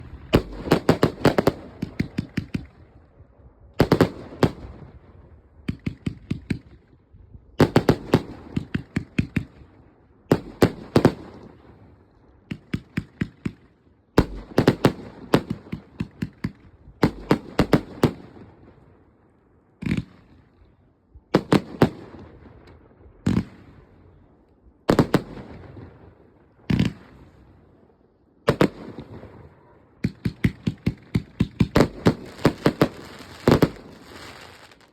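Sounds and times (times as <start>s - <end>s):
firework bangs: 0.0s - 2.8s, 28.5s - 34.9s
firework cake firing: 30.0s - 34.9s.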